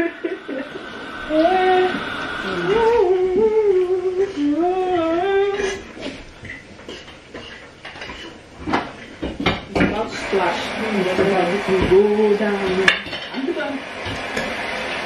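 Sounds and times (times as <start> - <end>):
woman humming: 0.0 - 6.2.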